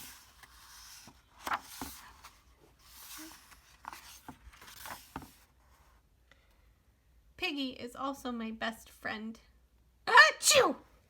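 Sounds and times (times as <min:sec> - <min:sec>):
paper rustling: 0:00.0 - 0:06.0.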